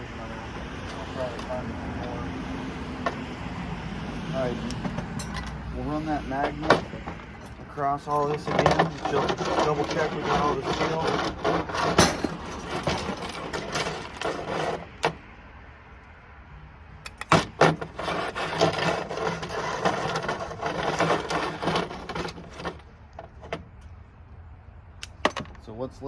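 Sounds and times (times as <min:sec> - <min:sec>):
small metal parts rattling and scraping: 0:00.2 - 0:02.2, 0:04.2 - 0:15.2, 0:17.1 - 0:23.9
sharp metal clicks: 0:17.0 - 0:17.4, 0:25.0 - 0:25.6.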